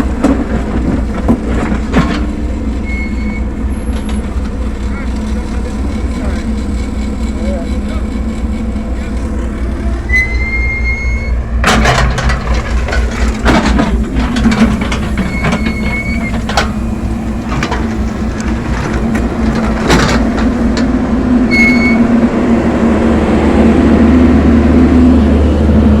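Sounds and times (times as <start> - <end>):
backhoe diesel engine: 0.0 - 26.0
metal clanks from bucket: 0.2 - 3.0, 11.6 - 20.9
high squeals: 2.8 - 3.5, 9.8 - 11.6, 14.5 - 17.0, 21.5 - 22.2.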